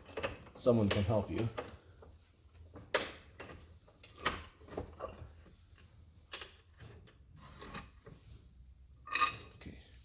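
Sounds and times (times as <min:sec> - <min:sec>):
metal parts clicking and knocking: 0:00.0 - 0:07.2.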